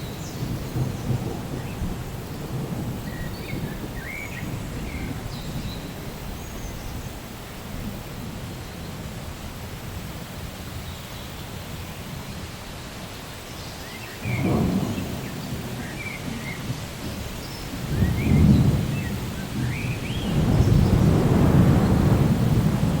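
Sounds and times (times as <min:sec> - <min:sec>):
thunder rumbling: 0:00.0 - 0:09.1, 0:14.2 - 0:23.0
steady rain: 0:00.0 - 0:23.0.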